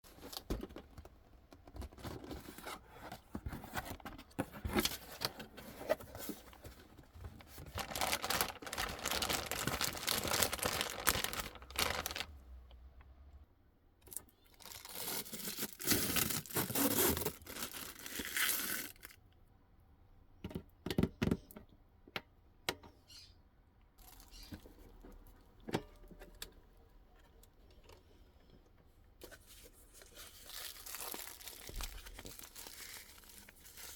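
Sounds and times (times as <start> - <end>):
plastic and paper rustling: 0.1 - 12.5, 14.6 - 19.0, 29.2 - 33.9.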